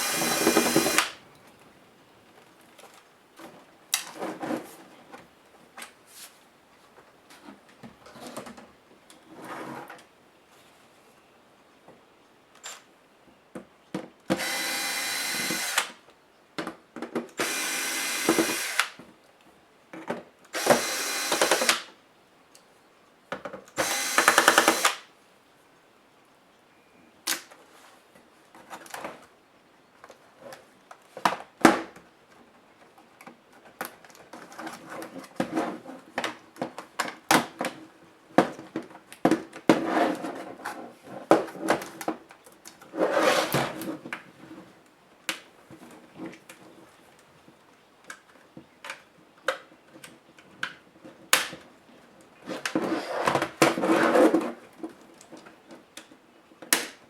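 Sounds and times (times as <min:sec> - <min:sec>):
scraping and rustling: 0:42.8 - 0:44.8.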